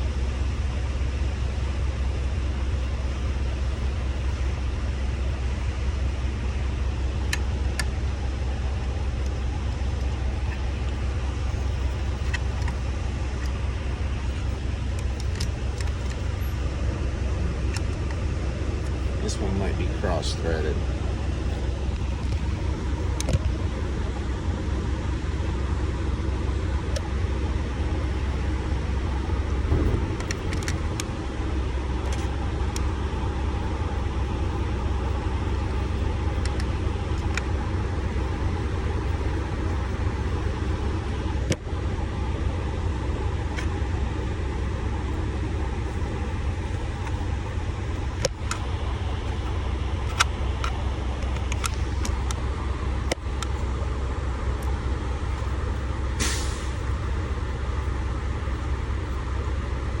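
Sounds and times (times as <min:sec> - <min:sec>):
truck engine idling: 0:00.0 - 1:00.0
brief hiss: 0:56.2 - 0:56.8.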